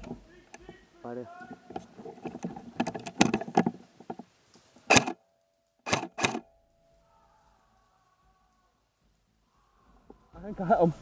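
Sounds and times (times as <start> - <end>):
clattering handling noise: 1.4 - 5.2
airsoft rifle shots: 4.9 - 5.2, 5.8 - 6.5.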